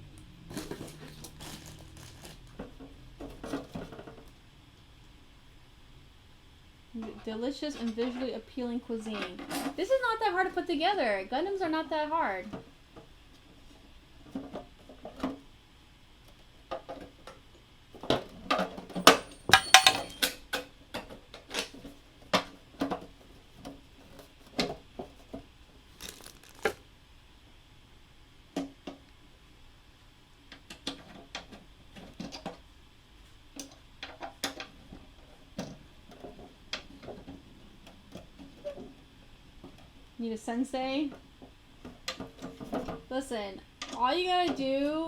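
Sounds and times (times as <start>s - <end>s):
small parts clattering: 0.5s - 2.7s, 18.6s - 20.4s, 25.9s - 26.8s.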